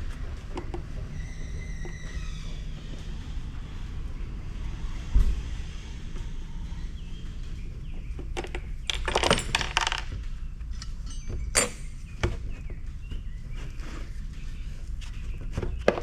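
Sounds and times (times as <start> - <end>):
small parts clinking and clattering: 8.4 - 10.2, 10.8 - 12.0.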